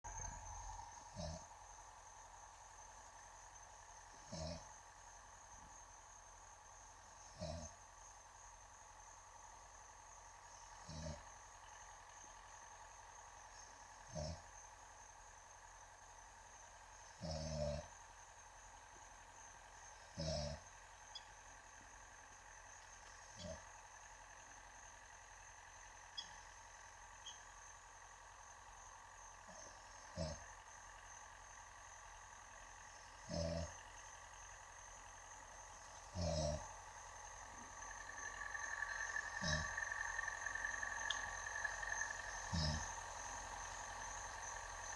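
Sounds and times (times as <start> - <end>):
man snoring: 17.2 - 17.9, 33.3 - 33.7, 36.1 - 36.8, 39.4 - 39.8, 42.5 - 43.0.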